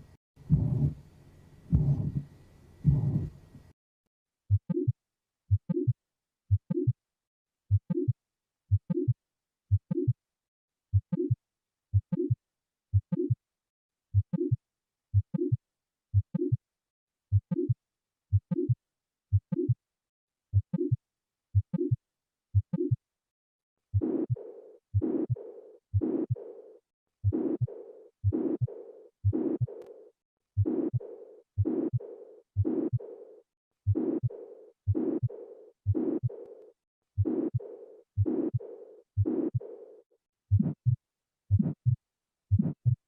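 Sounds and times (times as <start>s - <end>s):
heartbeat through stethoscope: 0.4s - 1.0s, 1.7s - 3.4s, 4.5s - 7.0s, 7.7s - 10.2s, 10.9s - 13.4s, 14.1s - 16.6s, 17.3s - 19.8s, 20.5s - 21.0s, 21.6s - 22.0s, 22.6s - 23.0s, 23.9s - 26.6s, 27.2s - 30.0s, 30.6s - 36.6s, 37.2s - 39.9s, 40.5s - 43.0s.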